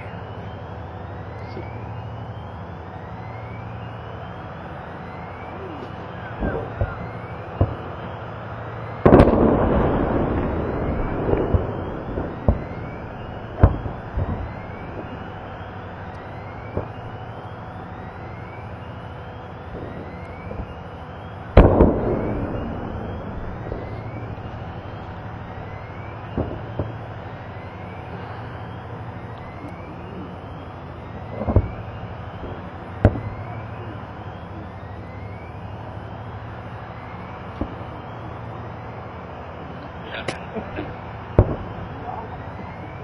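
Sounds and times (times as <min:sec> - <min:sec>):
munitions exploding: 0:02.9 - 0:43.0.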